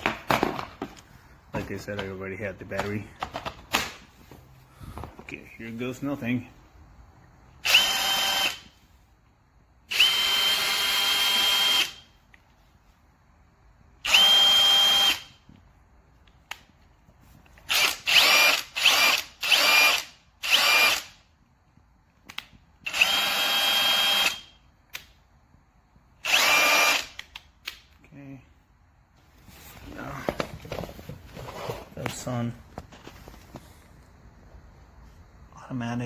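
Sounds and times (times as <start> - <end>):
impact wrench motor whine: 7.6 - 8.7, 9.9 - 12.0, 14.0 - 15.4, 17.7 - 21.2, 22.8 - 24.5, 26.2 - 27.2.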